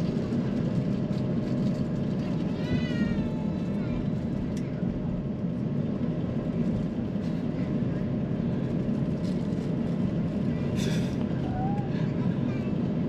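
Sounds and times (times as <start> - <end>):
aircraft cabin rumble: 0.0 - 13.0
faint voices: 10.4 - 13.0.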